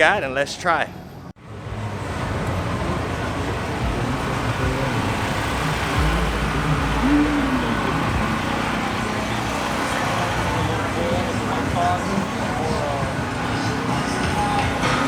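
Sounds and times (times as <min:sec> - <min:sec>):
passing cars and buses: 0:00.0 - 0:15.0
low rumble of passing vehicle: 0:01.0 - 0:15.0.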